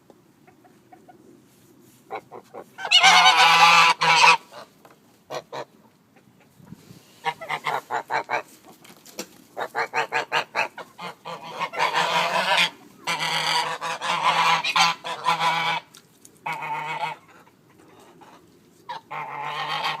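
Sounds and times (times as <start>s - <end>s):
geese honking: 2.1s - 4.7s, 7.2s - 8.5s, 9.6s - 20.0s.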